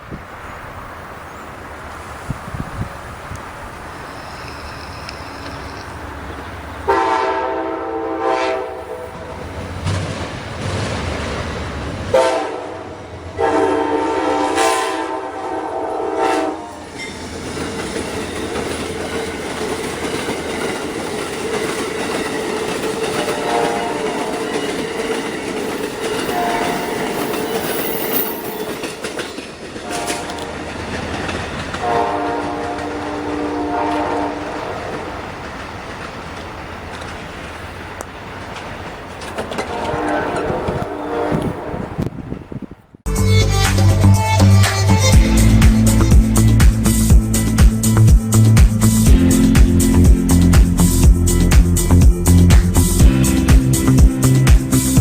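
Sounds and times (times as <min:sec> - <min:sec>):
train horn blasts: 0:06.8 - 0:09.4, 0:12.1 - 0:17.1, 0:23.0 - 0:25.1, 0:26.0 - 0:28.7, 0:29.8 - 0:30.6, 0:31.8 - 0:35.2, 0:39.6 - 0:42.1
train wheels clickety-clack: 0:08.2 - 0:42.2, 0:45.6 - 0:55.0.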